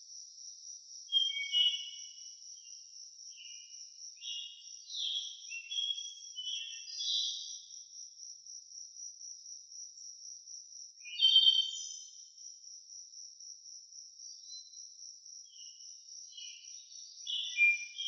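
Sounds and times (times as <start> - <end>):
bird singing: 1.1 - 8.0, 11.0 - 12.4, 14.3 - 18.0.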